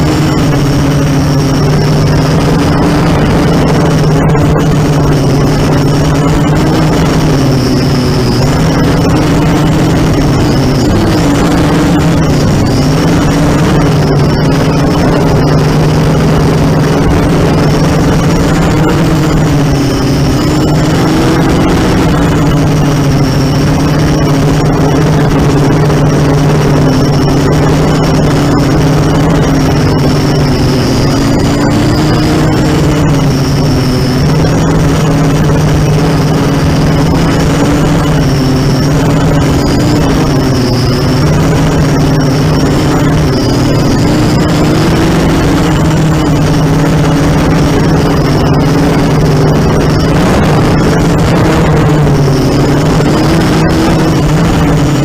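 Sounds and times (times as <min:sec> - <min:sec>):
quadcopter motors buzzing: 0:00.0 - 0:55.0.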